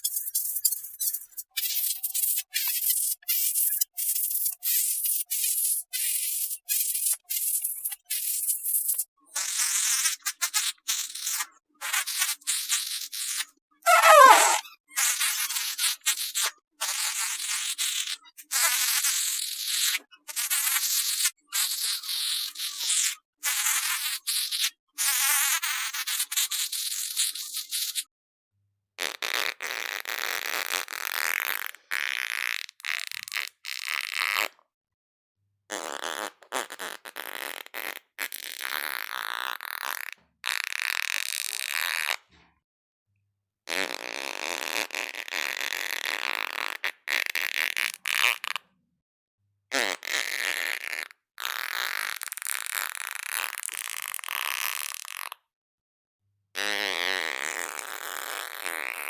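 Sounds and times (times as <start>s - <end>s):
fart sounds: 0.1s - 28.0s, 29.0s - 34.6s, 35.7s - 42.4s, 43.7s - 48.7s, 49.7s - 55.4s, 56.6s - 59.0s.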